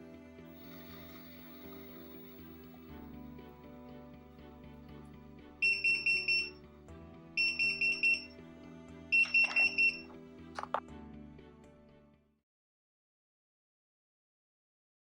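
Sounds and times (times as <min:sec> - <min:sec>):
background music: 0:00.0 - 0:12.4
pager high-pitched beeps: 0:05.6 - 0:06.5, 0:07.4 - 0:08.3, 0:09.2 - 0:10.1.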